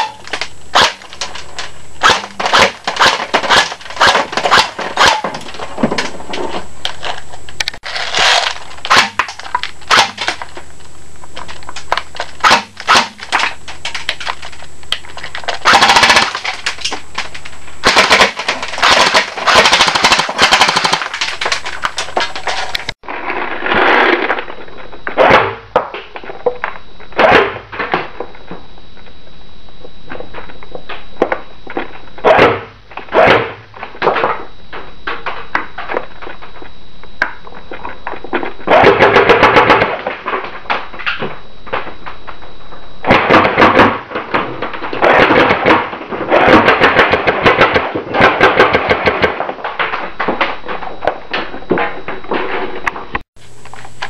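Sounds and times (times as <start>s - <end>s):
airsoft guns firing: 2.0s - 5.4s, 8.2s - 10.4s, 12.4s - 14.0s, 15.6s - 22.0s.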